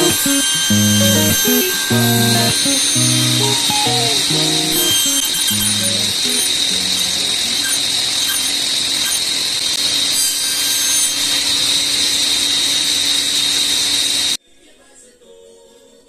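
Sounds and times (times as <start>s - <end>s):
power tool cutting wood: 0.0s - 9.3s.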